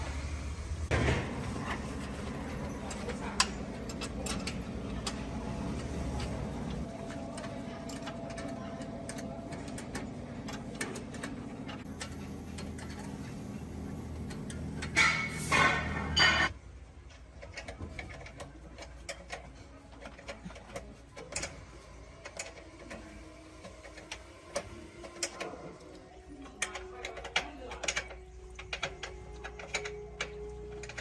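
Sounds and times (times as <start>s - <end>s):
ratcheting: 17.1s - 31.0s.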